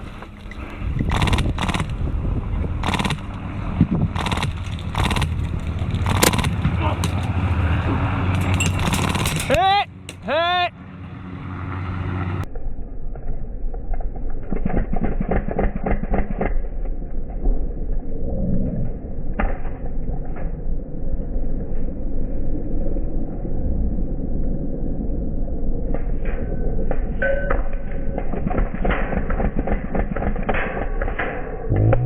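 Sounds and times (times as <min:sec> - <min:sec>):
wind rumble on microphone: 0:00.0 - 0:10.2, 0:11.8 - 0:32.0.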